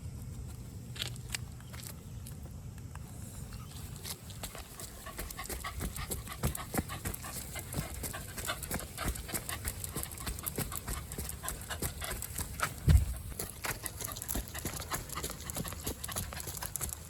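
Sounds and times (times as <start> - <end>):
dog panting rapidly: 4.4 - 17.0.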